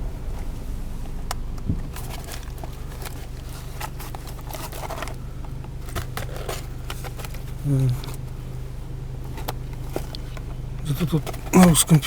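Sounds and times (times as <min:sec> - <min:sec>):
car engine hum: 0:00.0 - 0:12.0
road noise in car cabin: 0:00.0 - 0:12.0.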